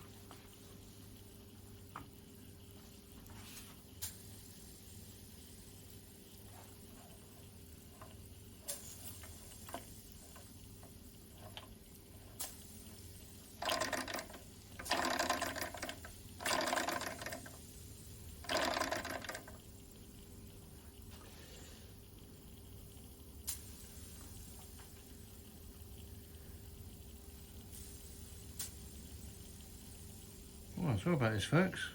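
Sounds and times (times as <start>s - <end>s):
toy steam engine chuffing: 13.4s - 17.7s, 18.4s - 19.6s.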